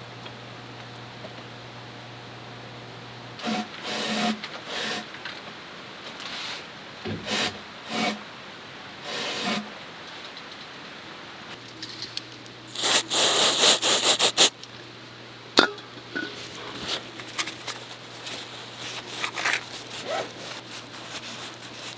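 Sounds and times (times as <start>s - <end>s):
short scraping strokes: 12.7s - 14.5s.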